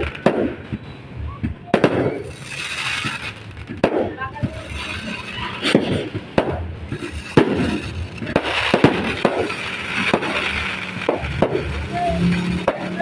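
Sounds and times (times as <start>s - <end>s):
firecrackers crackling: 0.0s - 13.0s
fireworks banging: 0.0s - 13.0s.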